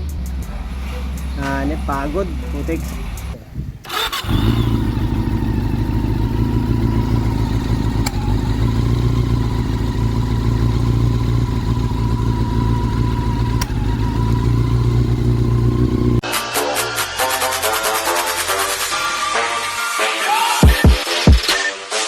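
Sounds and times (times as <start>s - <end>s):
motorcycle engine idling: 0.0s - 16.2s.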